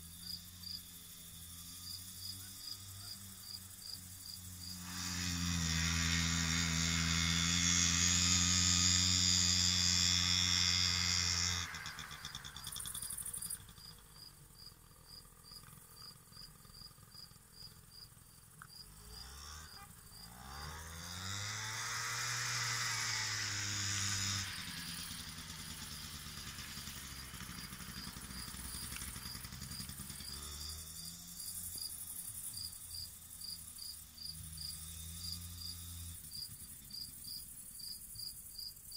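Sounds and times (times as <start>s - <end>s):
crickets chirping: 0.0s - 5.0s, 10.9s - 20.8s, 24.0s - 38.9s
scooter engine revving: 0.0s - 37.2s.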